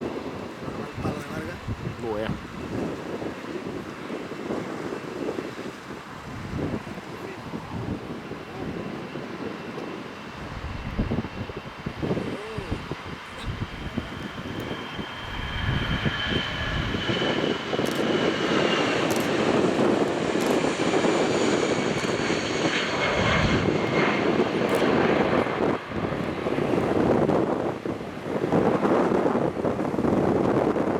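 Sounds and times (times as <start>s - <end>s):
jet airliner taking off: 0.0s - 30.9s
high whining engine tones: 7.7s - 25.0s.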